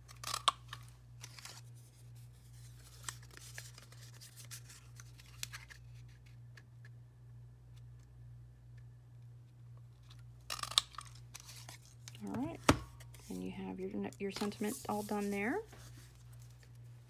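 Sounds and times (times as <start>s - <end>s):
paper rustling: 1.2s - 6.4s.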